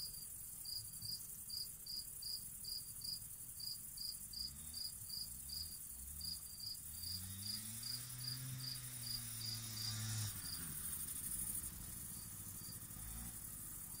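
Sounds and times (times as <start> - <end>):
cricket chirping: 0.0 - 14.0
scooter engine humming: 5.9 - 14.0.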